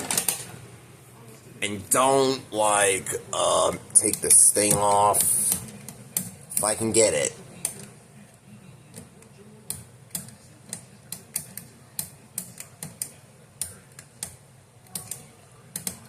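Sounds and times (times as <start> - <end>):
sharp plastic clicks and taps: 8.9 - 16.0.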